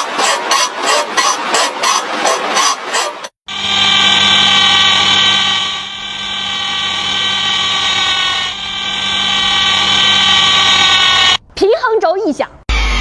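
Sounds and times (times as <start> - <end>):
car high-pitched whine: 3.5 - 11.4, 12.7 - 13.0
low hum: 3.5 - 11.6.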